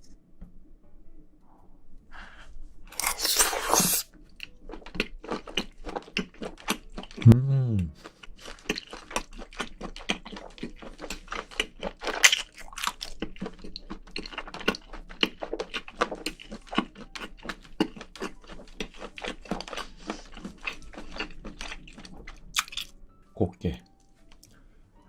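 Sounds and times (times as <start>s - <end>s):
chewing with crunching: 2.9s - 7.4s, 8.0s - 23.0s
wet mouth clicks: 22.6s - 22.9s.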